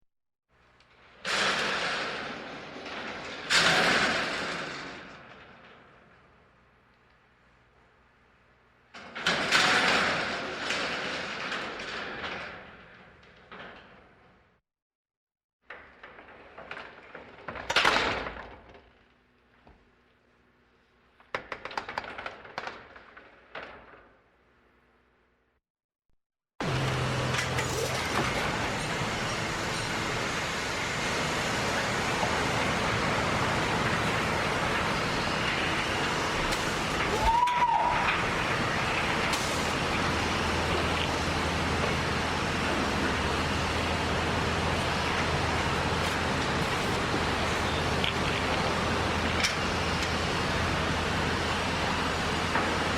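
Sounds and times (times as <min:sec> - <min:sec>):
elevator door sliding rush: 0:01.1 - 0:05.4, 0:26.6 - 0:52.9.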